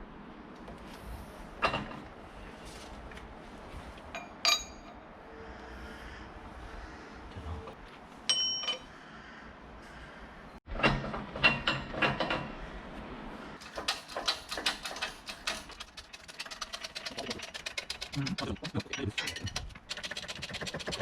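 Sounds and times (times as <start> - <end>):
metal tools clattering: 4.1 - 5.0, 8.3 - 8.9, 13.6 - 20.0
metallic clink: 4.1 - 5.0, 8.3 - 8.9
fast sharp clicks: 13.6 - 21.0.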